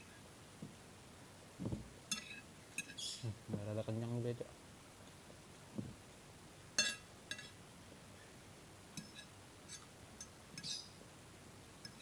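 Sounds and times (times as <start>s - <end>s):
soft thump: 1.6s - 1.9s, 5.8s - 6.0s
utensil clinking against a dish: 6.8s - 7.6s, 9.0s - 10.9s.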